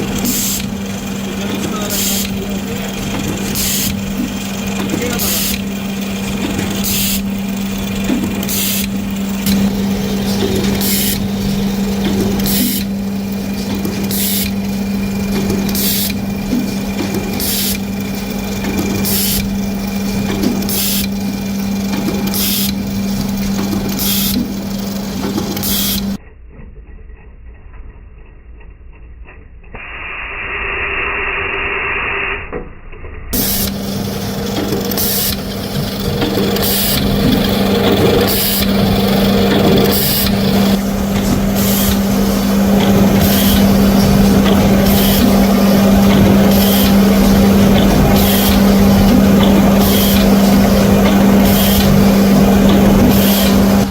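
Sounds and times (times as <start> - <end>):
machinery humming: 0.0 - 26.2, 33.3 - 53.9
sharp machine strokes: 33.4 - 53.9.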